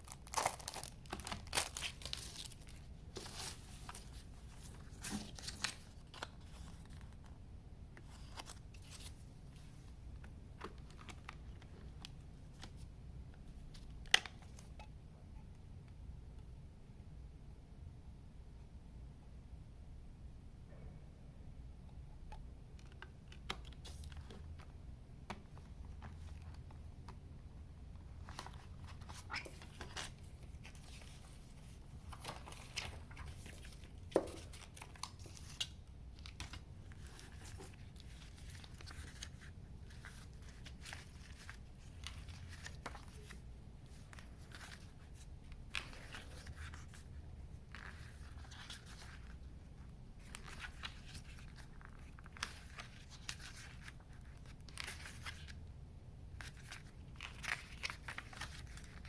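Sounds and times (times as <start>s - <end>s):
plastic wrap crinkling and tearing: 0.0s - 3.5s.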